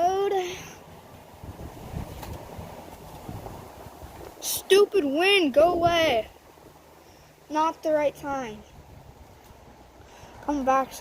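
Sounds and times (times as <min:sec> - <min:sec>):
wind buffeting microphone: 0:01.2 - 0:06.8, 0:08.3 - 0:11.0.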